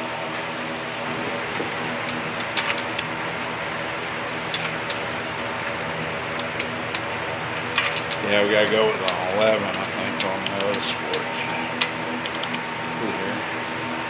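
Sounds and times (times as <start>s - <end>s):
steady mechanical hum: 0.0s - 14.0s
tools clicking and knocking: 4.5s - 5.8s, 6.4s - 12.6s.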